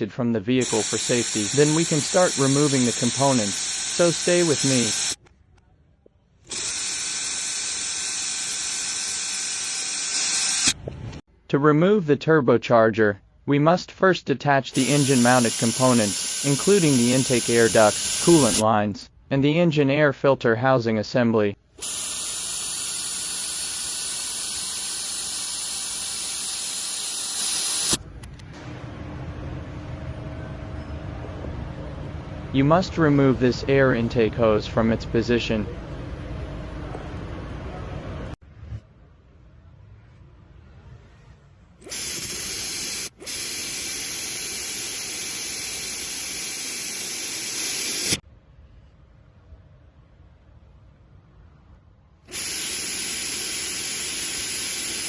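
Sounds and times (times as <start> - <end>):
loud steady hiss: 0.6 - 5.2, 14.8 - 18.6, 21.8 - 28.0, 41.8 - 48.2, 52.3 - 55.0
low background hum: 28.0 - 41.9.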